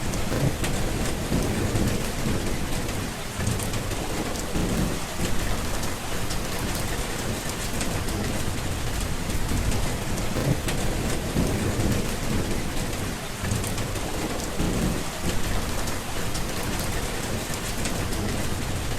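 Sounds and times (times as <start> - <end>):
steady rain: 0.0 - 18.9
thunder rumbles: 0.0 - 18.9.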